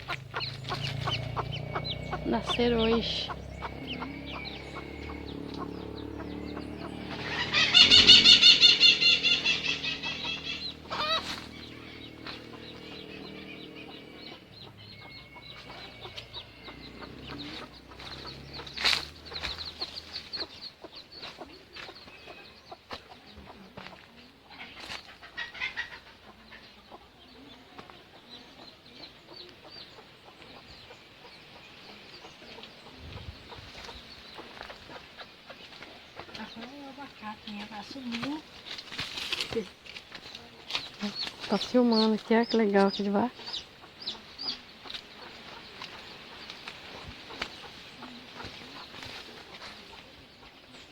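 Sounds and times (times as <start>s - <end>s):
chicken drawn-out call: 0.0s - 20.5s
chickens clucking: 0.0s - 50.9s
chicks peeping: 0.0s - 50.9s.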